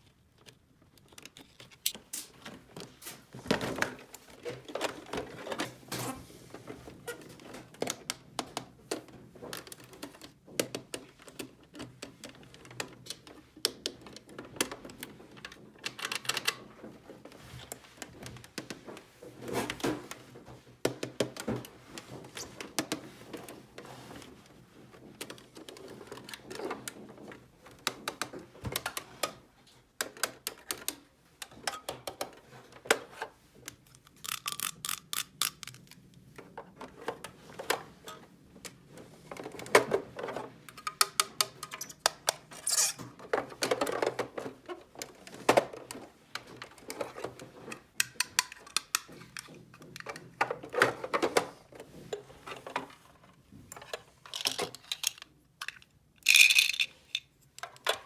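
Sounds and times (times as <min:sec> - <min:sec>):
plastic toy pieces clicking: 0:33.8 - 0:36.0, 0:48.0 - 0:49.4, 0:54.3 - 0:57.8.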